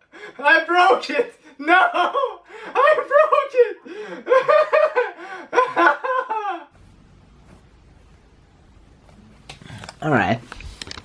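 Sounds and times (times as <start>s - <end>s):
faint low hum: 6.8s - 11.0s.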